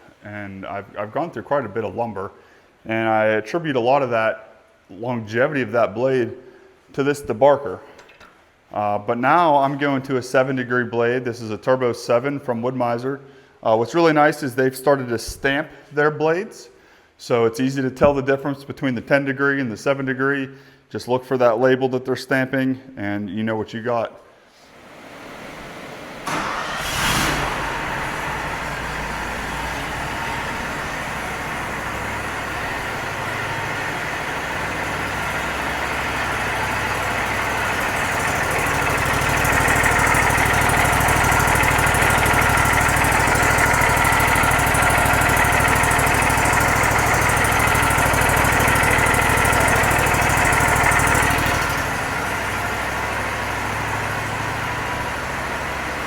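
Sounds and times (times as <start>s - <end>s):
engine running: 25.1s - 56.0s.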